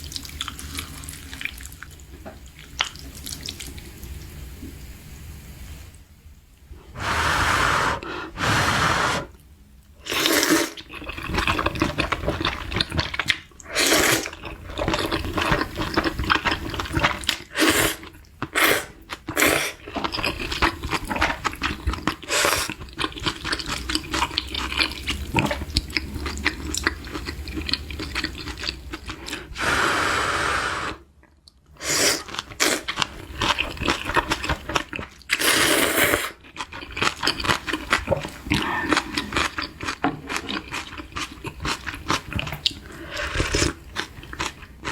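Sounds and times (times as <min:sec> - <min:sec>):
slurping noodles: 0:06.9 - 0:09.4, 0:10.0 - 0:31.1, 0:31.8 - 0:44.9
wet chewing: 0:10.1 - 0:29.5, 0:31.2 - 0:44.9.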